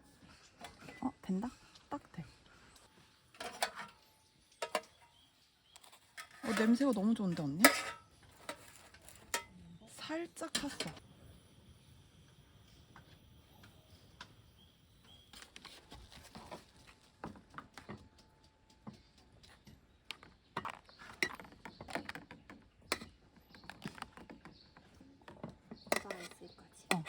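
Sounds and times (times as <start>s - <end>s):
cookware and utensils clattering: 0.1s - 11.0s, 19.6s - 27.0s.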